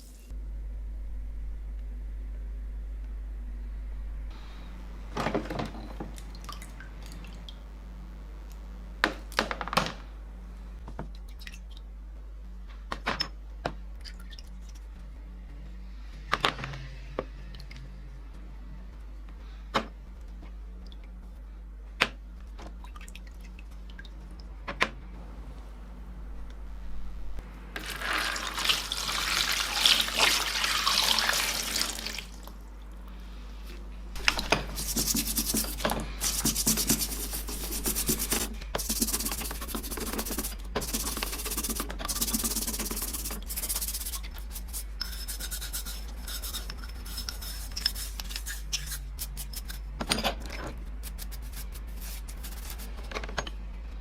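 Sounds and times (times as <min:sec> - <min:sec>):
steady low hum: 0:00.0 - 0:27.8, 0:28.5 - 0:54.0
scrubbing on metal: 0:34.2 - 0:49.9.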